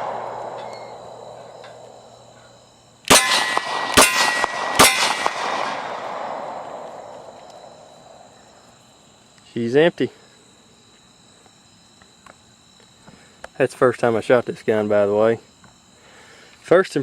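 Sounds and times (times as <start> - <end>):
steel target ringing: 0.0 - 2.5, 3.1 - 7.7
pistol shots: 3.1 - 8.2.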